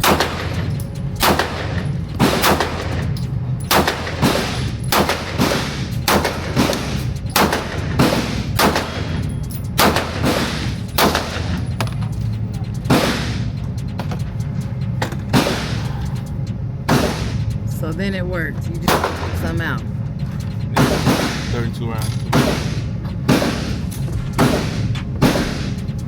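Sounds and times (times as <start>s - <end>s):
pistol shots: 0.0s - 12.0s, 12.9s - 13.5s, 15.3s - 15.9s, 16.9s - 17.6s, 18.9s - 19.4s, 20.8s - 21.6s, 22.3s - 25.9s
low hum: 0.0s - 26.0s.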